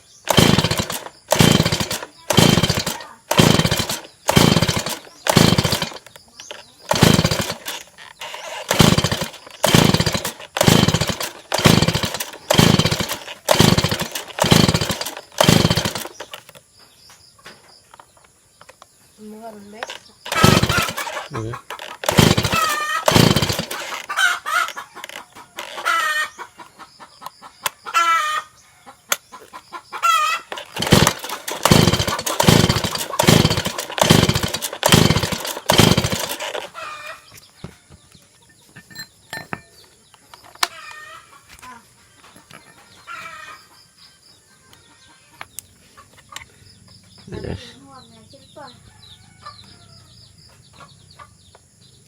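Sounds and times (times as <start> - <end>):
chainsaw pull-cord strokes: 0.0 - 16.6, 19.8 - 26.3, 30.0 - 37.2
chickens clucking: 19.2 - 34.0, 35.4 - 51.9.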